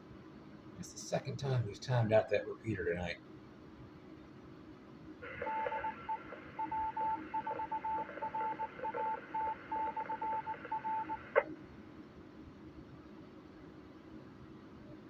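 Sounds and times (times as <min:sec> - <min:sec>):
radio hiss: 0:00.8 - 0:03.2, 0:05.2 - 0:06.6
morse code beeping tone: 0:05.4 - 0:11.4.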